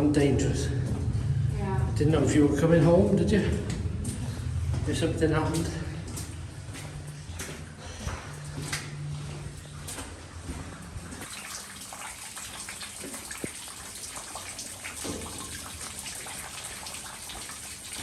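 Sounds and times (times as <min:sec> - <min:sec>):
low hum: 0:00.0 - 0:11.2
water rushing: 0:11.2 - 0:18.0.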